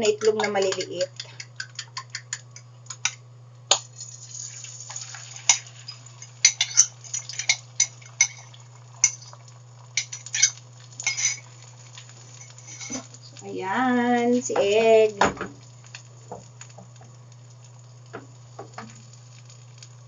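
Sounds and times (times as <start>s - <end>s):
metal utensil clinking against bowl: 0.0s - 2.3s, 10.0s - 11.4s
steady low hum: 0.0s - 20.0s.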